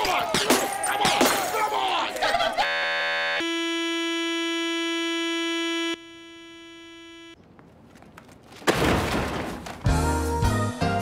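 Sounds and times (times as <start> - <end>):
electronic buzzer tone: 2.6 - 7.4.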